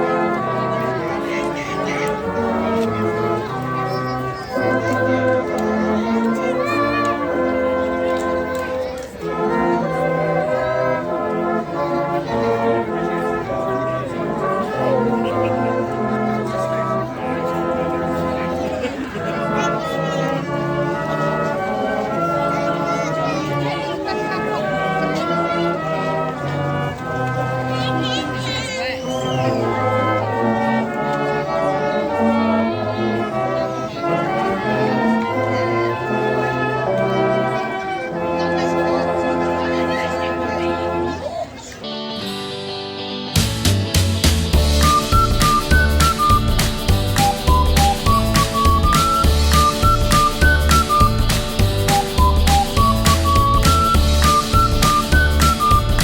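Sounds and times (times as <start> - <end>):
brass instruments playing in harmony: 0.0 - 41.2, 44.4 - 56.0
moving bass line: 43.4 - 56.0.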